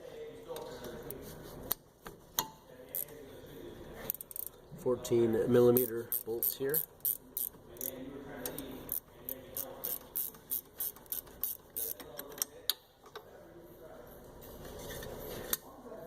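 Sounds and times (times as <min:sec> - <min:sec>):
hand ratchet clicking: 0:05.8 - 0:07.9, 0:08.9 - 0:12.3.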